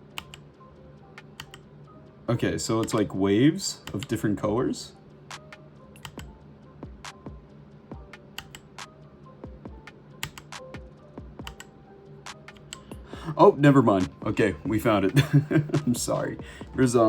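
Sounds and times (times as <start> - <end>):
quiet background music: 0.0 - 17.0
mechanical keyboard clicks: 6.0 - 6.3, 8.4 - 8.6, 10.2 - 10.5.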